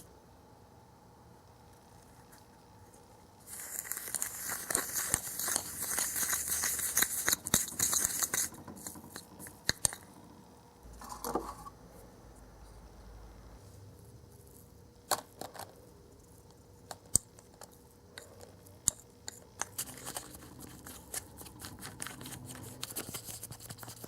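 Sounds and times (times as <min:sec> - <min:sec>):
plastic packaging crinkling and tearing: 0:03.5 - 0:08.5.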